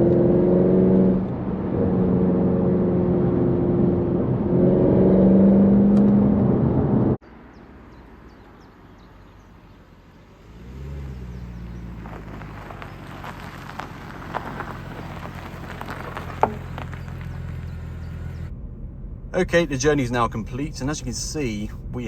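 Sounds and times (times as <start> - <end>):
car engine running hard: 9.6 - 22.0.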